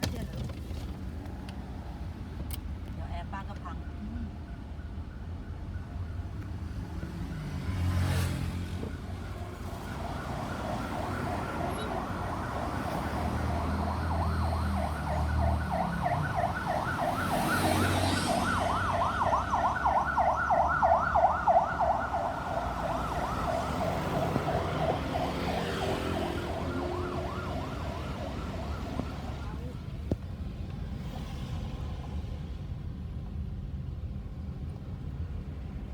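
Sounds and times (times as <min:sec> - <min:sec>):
rumble of road traffic: 0:00.0 - 0:35.9
ambulance siren yelping: 0:04.3 - 0:29.7.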